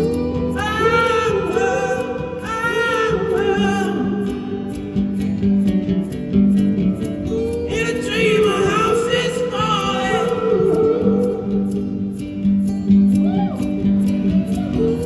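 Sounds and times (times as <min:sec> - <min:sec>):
wordless singing: 0:00.0 - 0:05.7, 0:07.0 - 0:13.2
acoustic guitar: 0:00.0 - 0:15.0.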